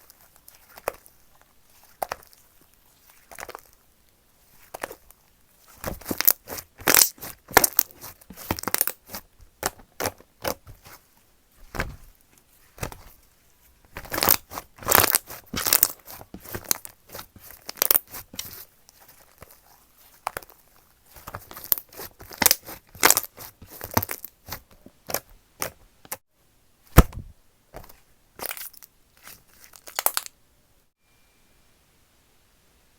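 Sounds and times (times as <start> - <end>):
slime squishing and popping: 5.8 - 10.7, 14.0 - 18.6, 21.2 - 25.8, 29.8 - 30.3.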